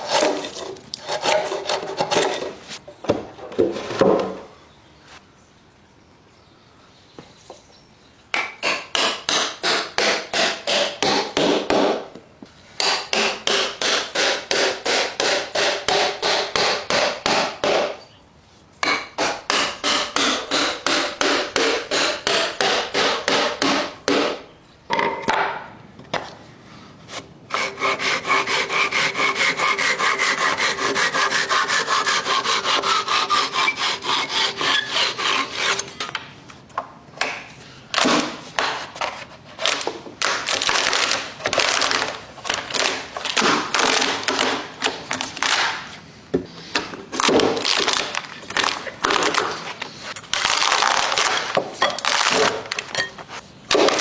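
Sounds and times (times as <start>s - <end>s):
hand saw cutting wood: 0.0s - 2.8s, 12.8s - 17.4s, 19.2s - 23.6s, 27.1s - 36.1s.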